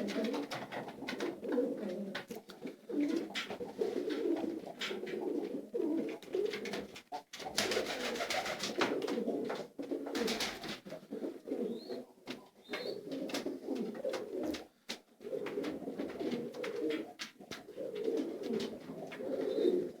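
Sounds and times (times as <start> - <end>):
pigeons cooing: 0.0 - 14.6, 15.2 - 20.0.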